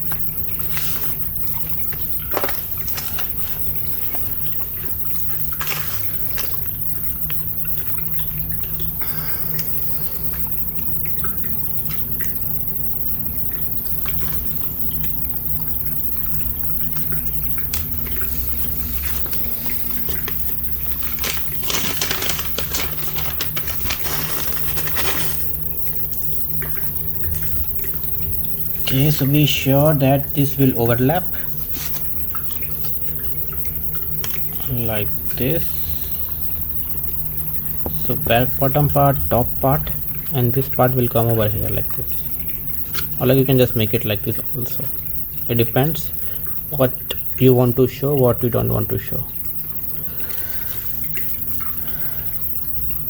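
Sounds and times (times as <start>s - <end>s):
steady low hum: 0.0s - 53.0s
clicks and rustles: 0.1s - 7.4s, 17.5s - 25.6s, 31.6s - 32.3s
plastic parts clattering: 2.2s - 4.3s, 5.5s - 6.7s, 17.7s - 25.6s, 31.7s - 32.1s
cardboard and plastic handling: 2.3s - 4.3s, 18.6s - 25.5s, 31.8s - 32.1s.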